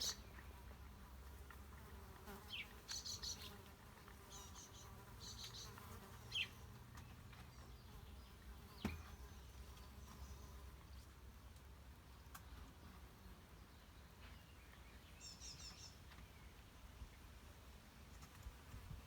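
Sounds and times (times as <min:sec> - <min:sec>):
faint insect buzz: 0:00.0 - 0:06.8
small birds chirping: 0:00.0 - 0:11.1, 0:12.1 - 0:17.3.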